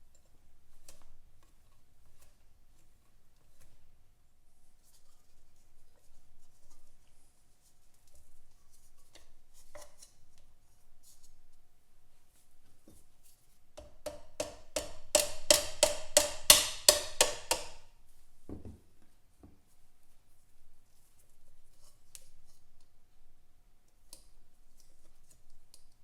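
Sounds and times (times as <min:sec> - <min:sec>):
hammer tapping on metal: 0:13.8 - 0:17.8.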